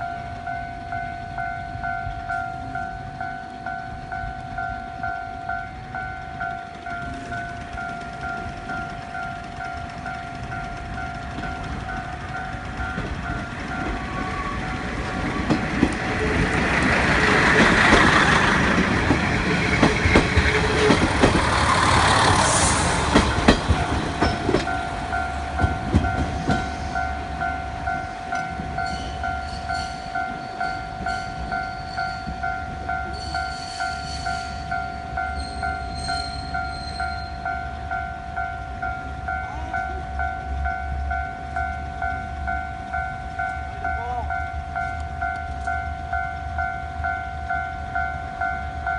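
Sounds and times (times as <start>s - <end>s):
train rumble: 0.0s - 48.9s
level crossing bell clanging: 23.1s - 48.9s.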